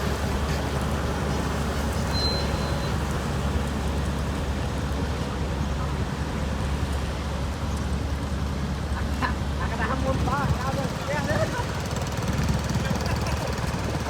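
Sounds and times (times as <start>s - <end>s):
diesel engines rumbling: 0.0s - 14.0s
high whistle-like tone: 2.1s - 3.0s.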